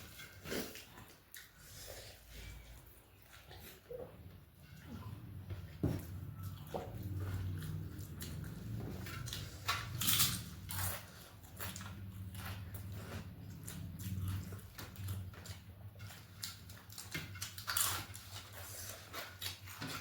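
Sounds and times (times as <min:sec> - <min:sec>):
crunchy chewing: 0:06.0 - 0:20.0.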